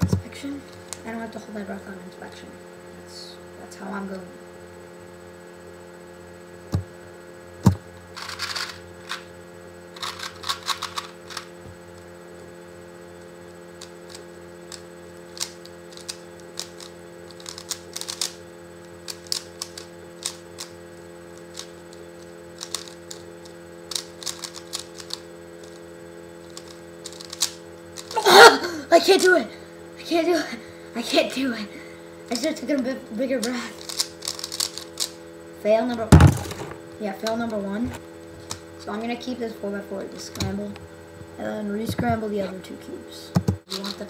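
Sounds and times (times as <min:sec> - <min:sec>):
electrical hum: 0:00.0 - 0:44.0
puzzle cube pieces clicking: 0:08.2 - 0:09.2, 0:10.0 - 0:11.5, 0:15.4 - 0:18.4, 0:19.0 - 0:20.7, 0:21.4 - 0:21.7, 0:22.6 - 0:23.2, 0:23.9 - 0:25.8, 0:26.5 - 0:28.2, 0:33.8 - 0:35.1
sharp knocks: 0:36.1 - 0:36.8.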